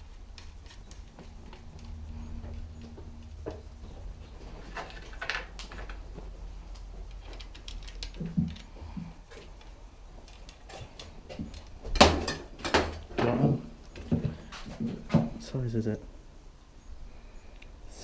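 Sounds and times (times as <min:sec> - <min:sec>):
loud clatter of parts: 0:04.6 - 0:06.1, 0:07.0 - 0:09.6, 0:10.2 - 0:13.4
tools and bike parts clicking: 0:06.7 - 0:13.0.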